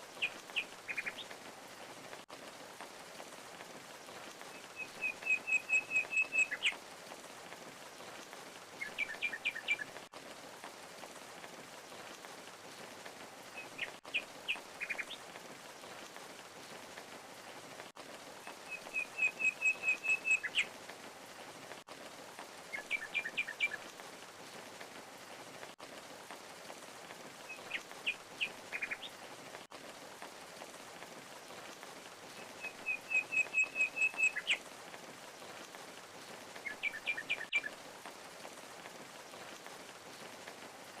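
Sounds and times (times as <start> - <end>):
songbird singing: 0.1 - 1.4, 4.0 - 6.8, 8.8 - 10.0, 13.5 - 15.2, 18.5 - 20.7, 22.7 - 23.9, 27.5 - 29.3, 32.3 - 34.6, 36.3 - 37.8.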